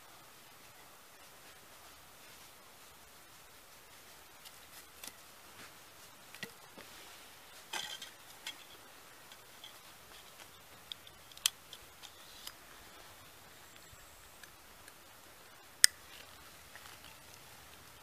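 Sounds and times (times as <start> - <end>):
folding knife clicks and taps: 15.8 - 16.0.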